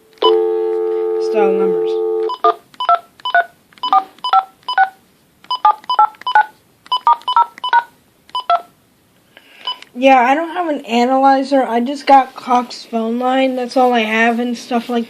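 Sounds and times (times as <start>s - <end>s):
phone keypad dialing beeps: 0.2s - 8.7s, 9.6s - 9.9s.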